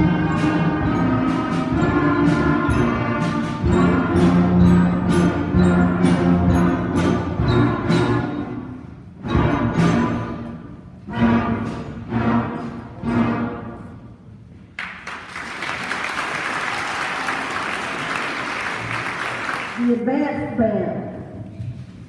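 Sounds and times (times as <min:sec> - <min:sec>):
audience applause: 0:14.8 - 0:19.8.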